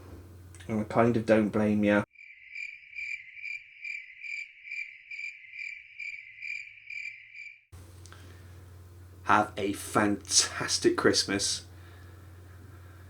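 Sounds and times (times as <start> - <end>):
cricket chirping: 2.1 - 7.7.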